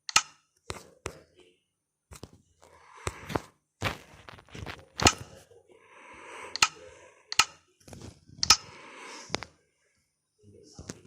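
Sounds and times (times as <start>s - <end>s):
sharp clicks and knocks: 0.0s - 0.4s
rustling of objects handled: 3.3s - 5.4s.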